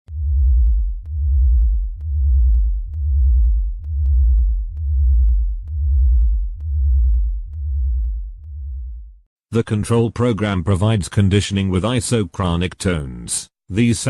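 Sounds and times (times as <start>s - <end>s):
pulsing synthesized bass tone: 0.1s - 9.3s.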